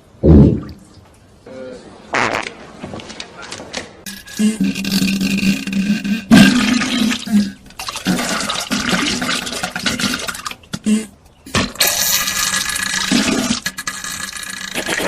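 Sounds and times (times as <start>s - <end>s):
wet spluttering farts: 2.1s - 2.6s, 4.6s - 15.0s.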